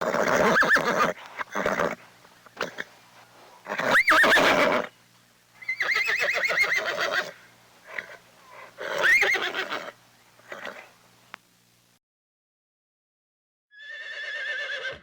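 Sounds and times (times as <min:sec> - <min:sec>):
horse whinnying: 0:00.0 - 0:02.0, 0:03.6 - 0:04.9, 0:05.6 - 0:10.9, 0:13.8 - 0:15.0.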